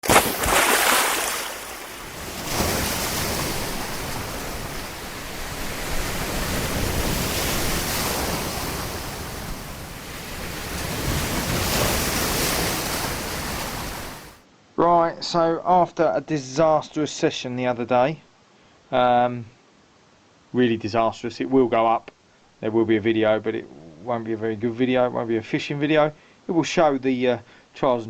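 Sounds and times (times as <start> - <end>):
gusty wind buffeting microphone: 1.7 - 14.4.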